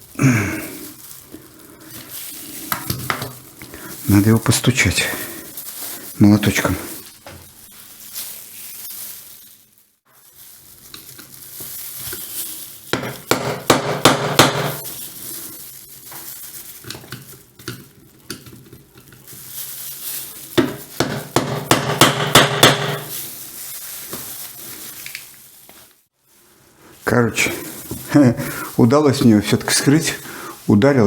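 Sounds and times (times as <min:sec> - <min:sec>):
hammer tapping on metal: 0:13.0 - 0:14.8, 0:20.6 - 0:23.1.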